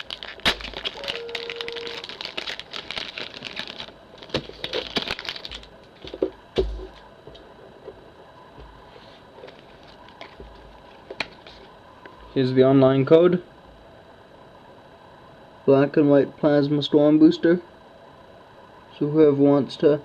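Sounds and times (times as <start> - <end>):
foil wrapper crinkling and tearing: 0.0 - 6.2.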